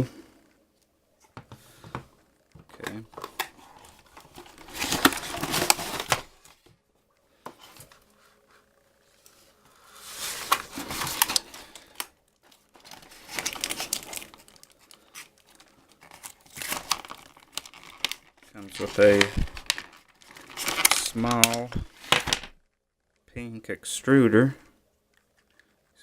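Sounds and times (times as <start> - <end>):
packaging crinkling and tearing: 2.8 - 6.7, 10.0 - 22.6.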